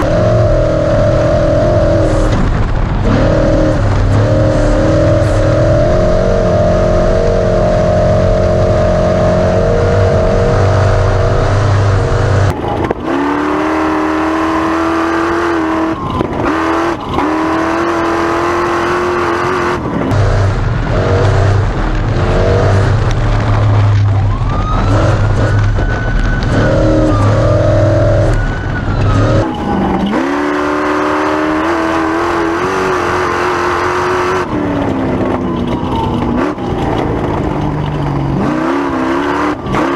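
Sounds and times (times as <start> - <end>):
truck engine revving hard: 0.0 - 39.9.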